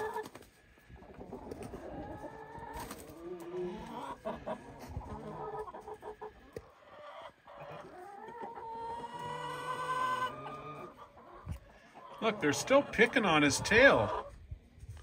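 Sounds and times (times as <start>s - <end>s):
chickens clucking: 0.0s - 15.0s
long drawn-out chicken call: 3.2s - 12.3s.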